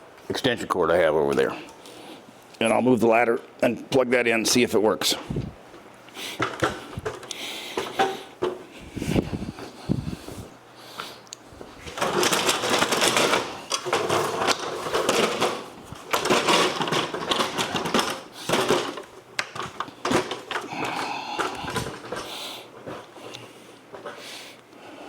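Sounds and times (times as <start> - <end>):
stepladder clattering: 11.8 - 23.1.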